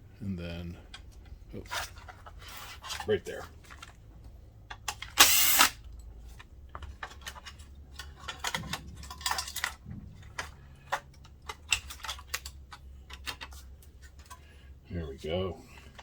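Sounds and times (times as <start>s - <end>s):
plastic and metal parts clattering: 0.9s - 14.6s.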